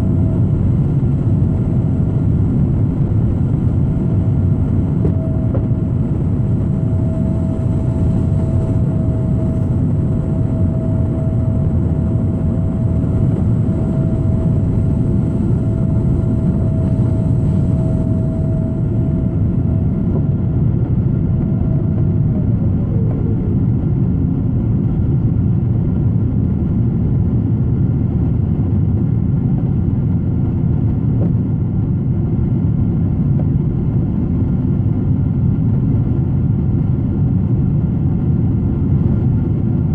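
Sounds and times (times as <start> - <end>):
thin engine whine: 0.0 - 25.1
jet engines roaring: 0.0 - 25.5.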